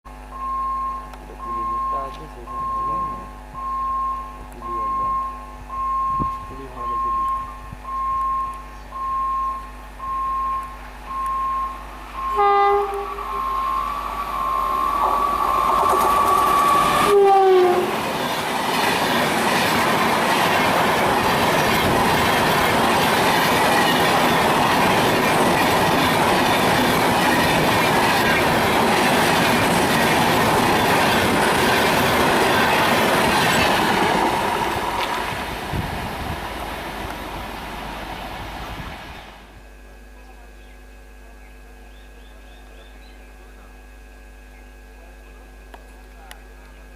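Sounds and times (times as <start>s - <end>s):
short high beeping: 0.4s - 18.0s
train rushing past: 11.5s - 39.5s
train horn blast: 12.2s - 18.2s.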